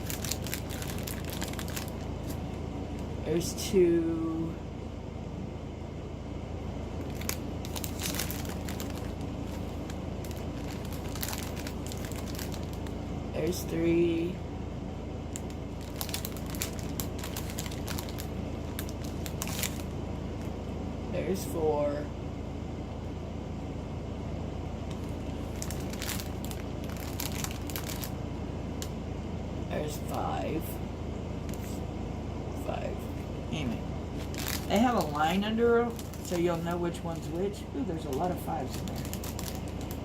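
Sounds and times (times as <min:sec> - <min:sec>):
plastic bags crinkling: 0:00.0 - 0:02.4, 0:07.0 - 0:12.9, 0:15.4 - 0:19.9, 0:24.9 - 0:28.2, 0:34.2 - 0:37.4, 0:38.0 - 0:40.0
steady low hum: 0:00.0 - 0:40.0.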